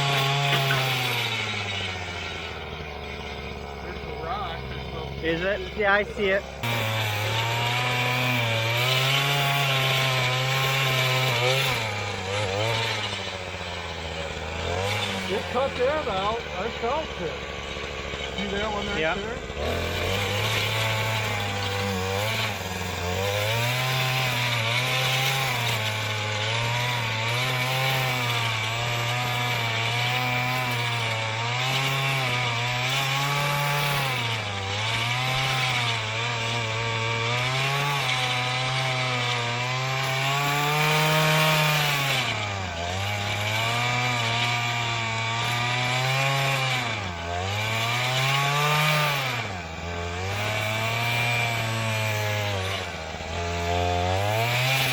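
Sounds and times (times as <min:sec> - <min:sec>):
tiller engine running: 0:00.0 - 0:54.9.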